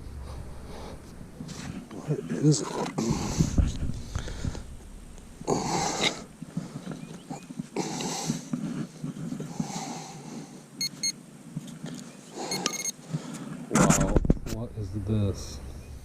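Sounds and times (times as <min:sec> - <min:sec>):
person huffing: 0:03.0 - 0:04.7, 0:05.4 - 0:10.6
metal detector beeps: 0:10.8 - 0:11.2, 0:12.5 - 0:13.0.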